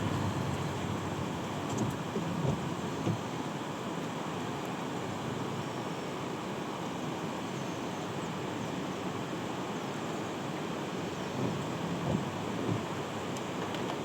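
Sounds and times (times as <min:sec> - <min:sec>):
mountain stream rushing: 0:00.0 - 0:07.3.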